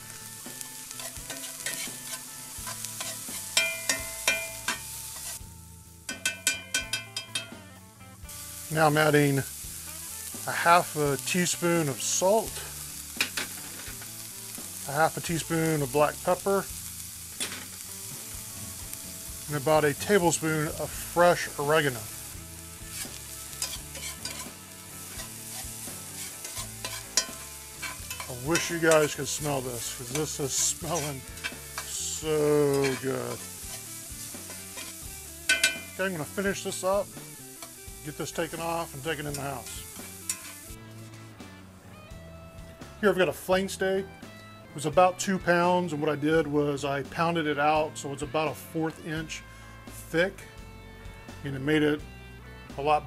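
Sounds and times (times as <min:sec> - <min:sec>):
utensil scraping a pan: 0:00.0 - 0:05.4, 0:19.5 - 0:40.8
vegetables sizzling in oil: 0:00.0 - 0:41.8
utensil clinking against pan: 0:01.0 - 0:04.9, 0:06.1 - 0:07.6, 0:35.5 - 0:36.0.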